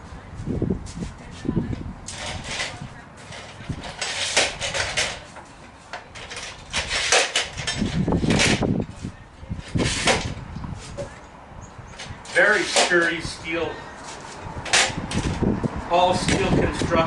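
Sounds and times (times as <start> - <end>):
metal sawhorse clattering: 2.1 - 5.4, 6.1 - 8.7, 12.2 - 13.7.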